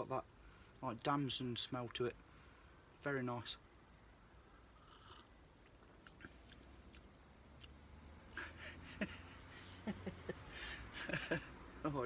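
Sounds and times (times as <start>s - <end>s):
man slurping coffee: 4.8s - 5.3s.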